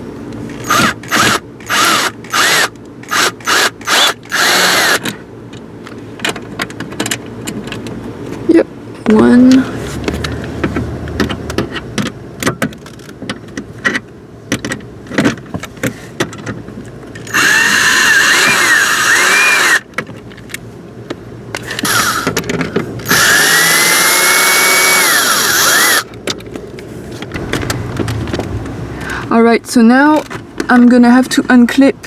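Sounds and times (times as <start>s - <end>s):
cordless drill motor whirring: 0.6s - 5.1s, 17.3s - 19.9s, 21.8s - 22.4s, 23.0s - 26.1s.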